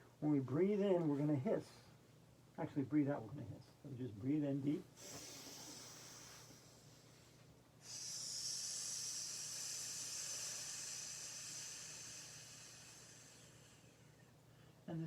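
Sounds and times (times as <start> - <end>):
woman hissing: 5.0 - 7.0, 7.8 - 14.0
quiet in-breath: 5.0 - 14.9.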